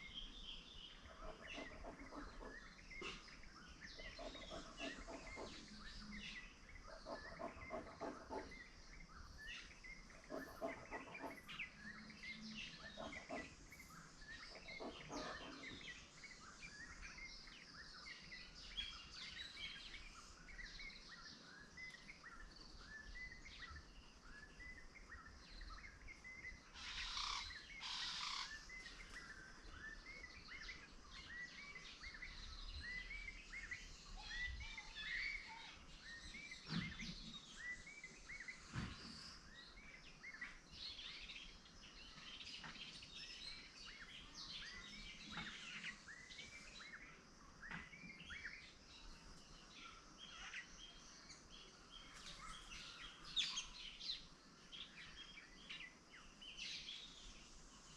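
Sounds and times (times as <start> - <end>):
small birds chirping: 0.0 - 57.9
animal pulsed calls: 4.0 - 6.2, 10.2 - 11.8.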